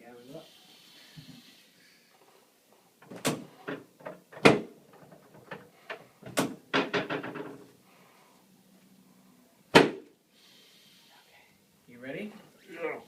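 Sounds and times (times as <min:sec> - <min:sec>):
adjusting table knocks and clacks: 0:03.0 - 0:07.6.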